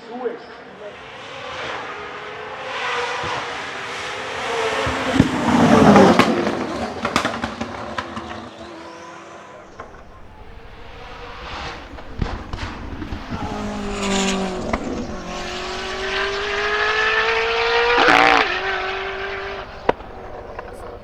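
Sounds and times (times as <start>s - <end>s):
car engine at high revs: 1.0s - 7.2s, 9.6s - 21.0s
exhaust pops: 9.6s - 21.0s
sharp crack: 9.6s - 21.0s.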